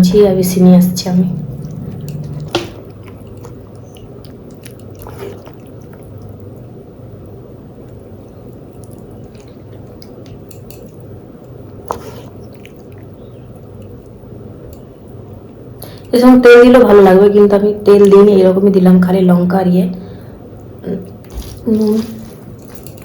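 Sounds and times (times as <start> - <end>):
low hum: 0.0 - 9.9
chewing food: 1.1 - 16.1, 21.0 - 23.0.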